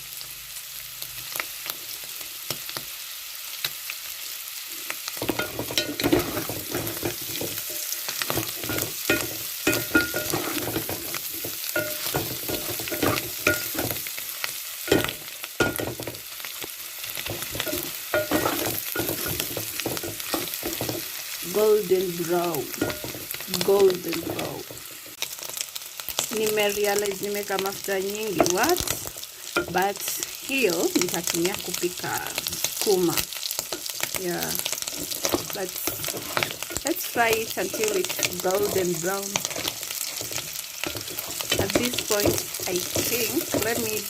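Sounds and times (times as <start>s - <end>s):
food sizzling in oil: 0.0s - 44.0s
scraping and knocking against pan: 5.2s - 14.1s, 17.2s - 21.1s, 34.7s - 36.8s.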